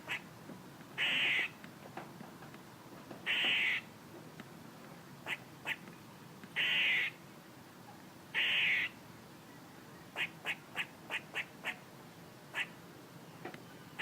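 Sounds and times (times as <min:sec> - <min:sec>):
squirrel harsh buzzy calls: 0:00.0 - 0:00.3, 0:01.0 - 0:01.6, 0:03.3 - 0:03.9, 0:05.2 - 0:05.8, 0:06.6 - 0:07.2, 0:08.3 - 0:09.0, 0:10.1 - 0:11.9, 0:12.5 - 0:12.8.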